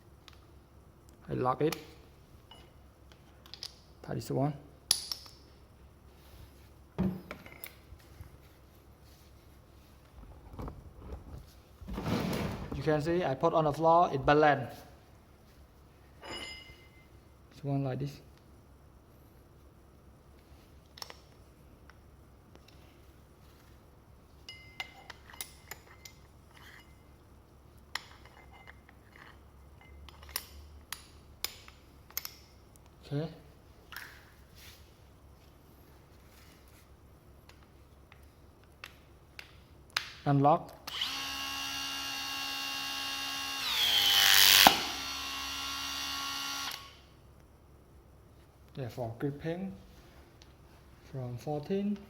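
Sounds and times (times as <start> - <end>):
metal tool clinks and taps: 16.2 - 17.0, 24.4 - 27.0
hydraulic crimper motor whine: 40.9 - 47.0.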